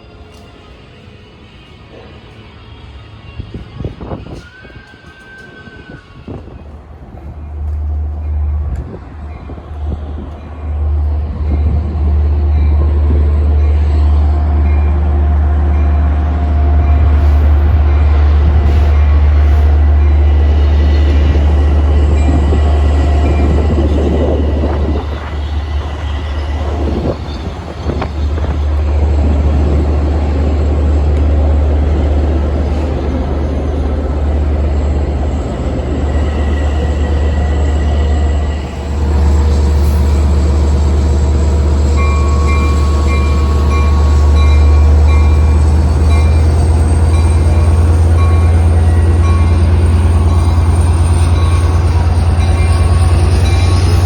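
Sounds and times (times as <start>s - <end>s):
train rumbling past: 0.0s - 54.0s.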